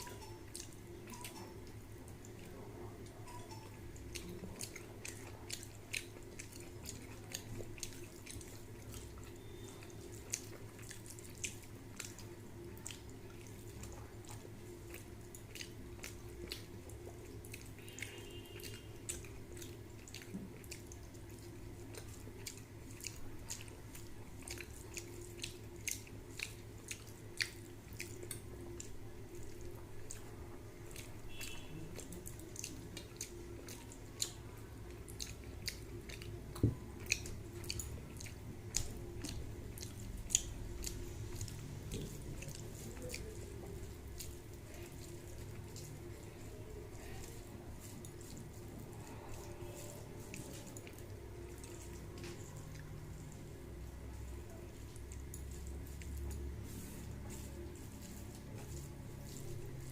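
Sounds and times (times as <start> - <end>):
wet mouth clicks and chewing: 0.0 - 59.9.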